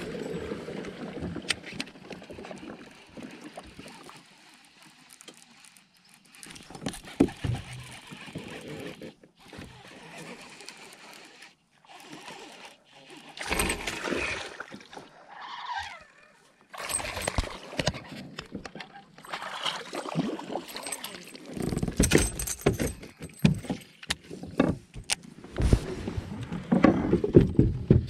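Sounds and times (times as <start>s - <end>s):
hard gear knocking and rattling: 6.4s - 8.6s, 20.9s - 25.2s.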